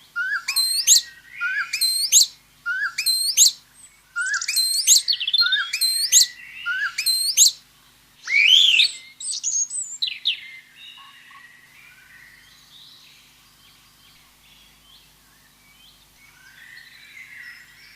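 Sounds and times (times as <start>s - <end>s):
birds chirping and calling: 0.2s - 3.6s, 4.2s - 7.6s, 8.2s - 11.5s.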